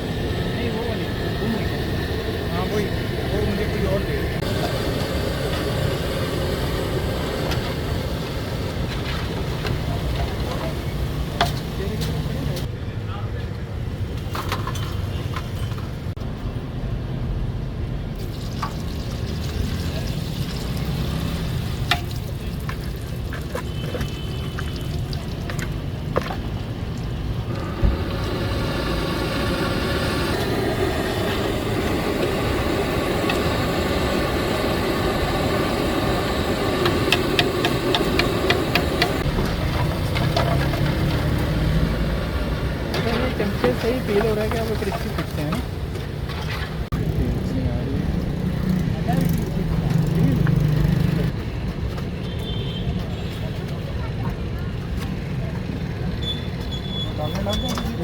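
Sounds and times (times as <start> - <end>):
low street rumble: 0.0 - 58.0
fries frying in hot oil: 18.2 - 46.9.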